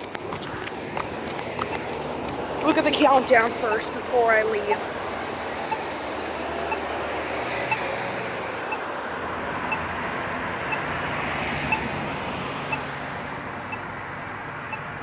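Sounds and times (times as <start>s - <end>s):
road traffic noise: 0.0s - 15.0s
pedestrian signal button beep: 10.7s - 10.9s, 14.7s - 14.9s.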